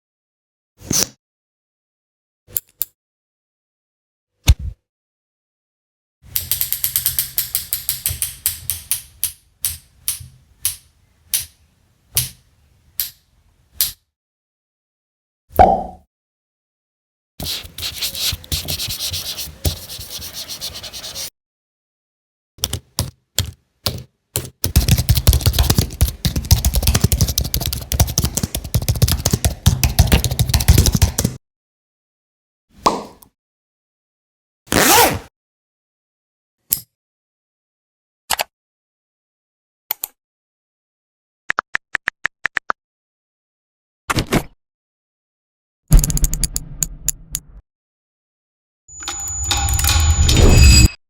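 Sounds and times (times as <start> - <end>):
typing on a computer keyboard: 22.6 - 31.4.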